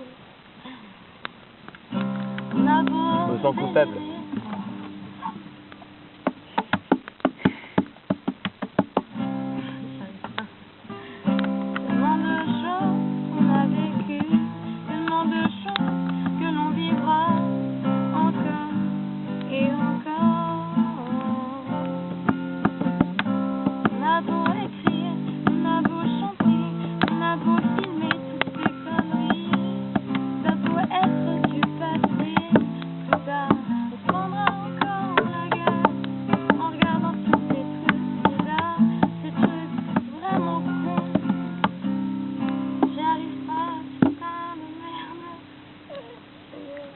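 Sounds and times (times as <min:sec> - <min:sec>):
acoustic guitar strumming: 0:01.6 - 0:45.9
sharp taps on guitar: 0:05.8 - 0:10.5, 0:21.0 - 0:43.0, 0:44.0 - 0:44.2.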